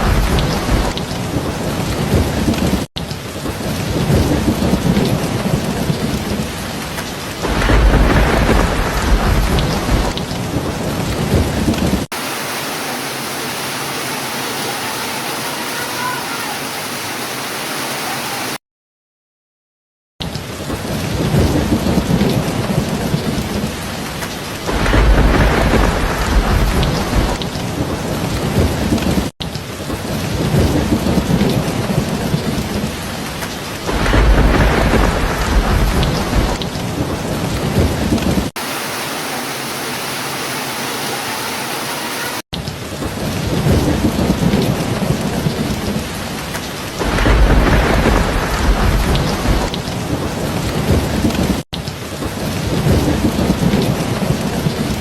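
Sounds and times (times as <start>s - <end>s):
thunder rolling: 0.0s - 12.1s, 20.6s - 29.3s, 29.9s - 38.6s, 42.9s - 51.6s, 52.2s - 55.0s
steady rainfall: 0.0s - 18.6s, 20.2s - 55.0s.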